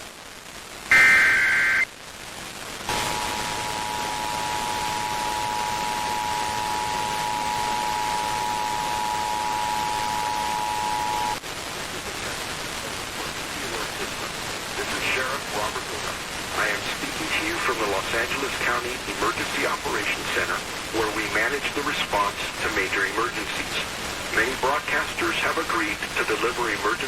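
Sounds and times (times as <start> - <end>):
radio static: 0.0 - 27.0
digital data screech: 0.9 - 1.9
steady dual tone alert: 0.9 - 1.9, 2.9 - 11.4.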